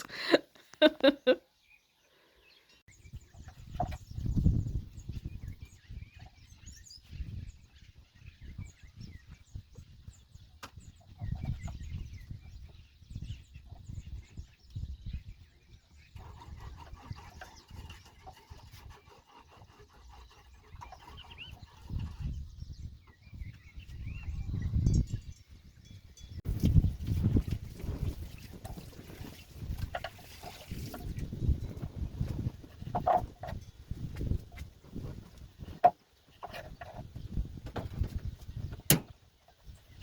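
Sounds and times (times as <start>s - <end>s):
birds chirping: 0.0s - 27.0s.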